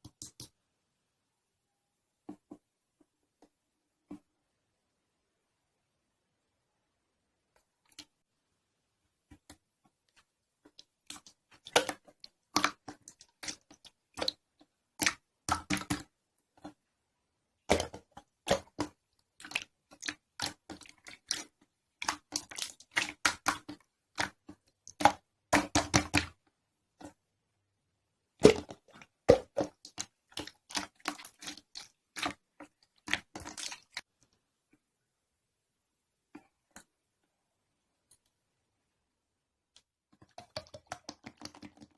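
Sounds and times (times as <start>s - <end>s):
slime squishing: 9.3s - 16.9s, 17.6s - 27.3s, 28.4s - 34.2s.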